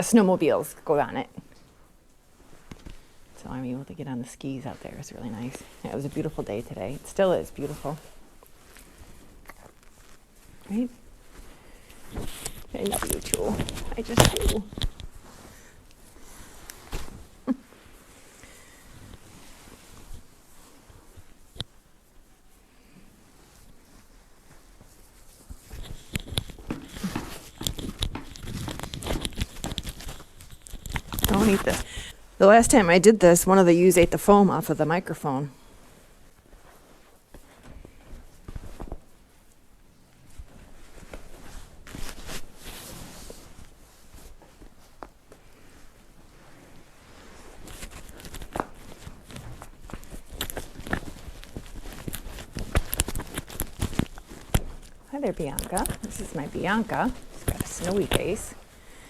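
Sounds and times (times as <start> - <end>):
crunching and rustling: 5.4 - 22.0, 23.4 - 32.1, 40.2 - 59.0
microphone handling noise: 11.9 - 17.6, 25.6 - 32.2, 47.5 - 58.7.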